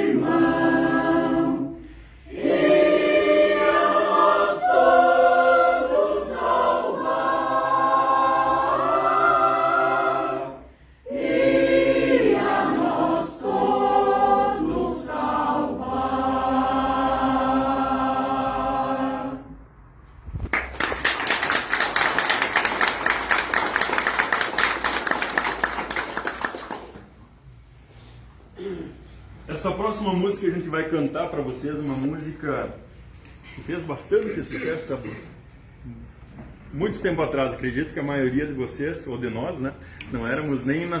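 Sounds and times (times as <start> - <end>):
choir singing: 0.0 - 19.7
audience applauding: 20.5 - 27.1.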